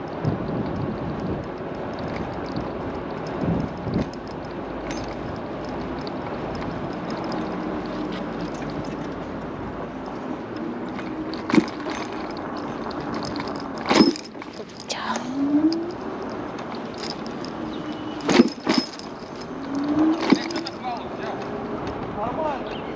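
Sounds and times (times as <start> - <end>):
wind and road noise: 0.0 - 22.9.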